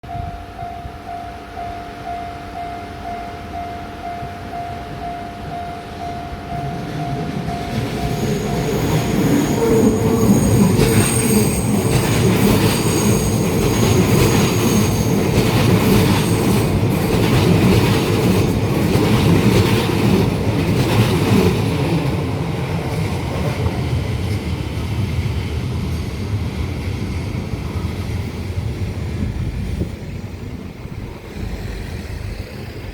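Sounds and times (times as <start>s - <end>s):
level crossing warning bell: 0.0s - 18.6s
electric train passing: 0.0s - 32.9s
wheels clacking over rail joints: 6.6s - 28.9s
wheel squeal: 8.0s - 15.2s.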